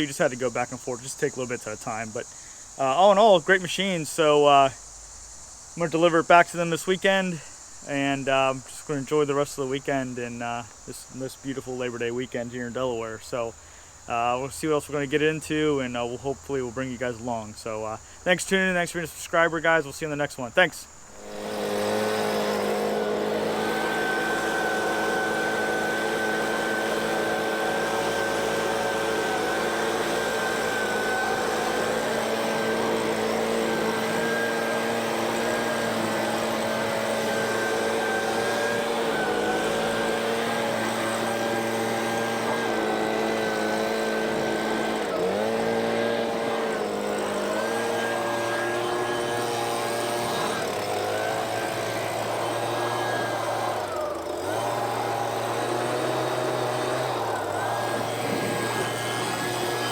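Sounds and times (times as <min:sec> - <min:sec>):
engine running: 0:21.1 - 0:59.9.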